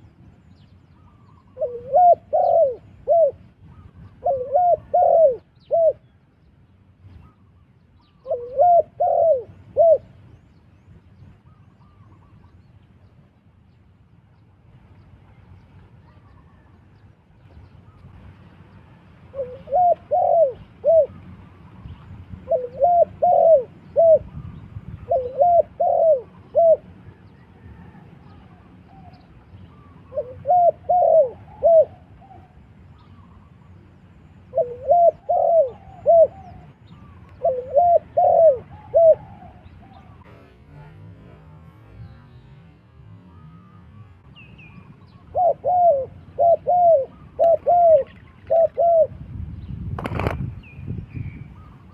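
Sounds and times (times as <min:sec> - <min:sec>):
dove cooing: 0:01.0 - 0:06.0, 0:08.2 - 0:10.2, 0:19.3 - 0:21.6, 0:22.4 - 0:33.4, 0:34.5 - 0:40.9, 0:43.3 - 0:49.2.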